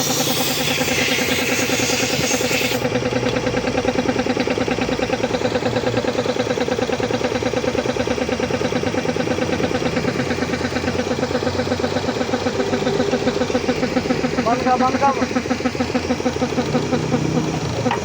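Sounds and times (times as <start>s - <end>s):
air hiss: 0.0s - 2.8s
air compressor chugging: 0.0s - 18.0s.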